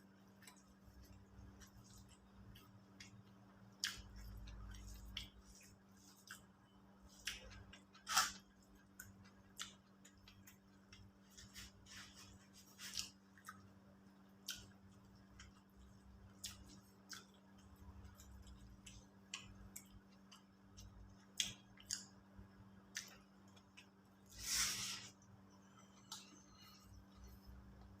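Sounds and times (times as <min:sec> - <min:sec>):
eating clicks and smacks: 0:00.4 - 0:06.6, 0:13.0 - 0:24.0.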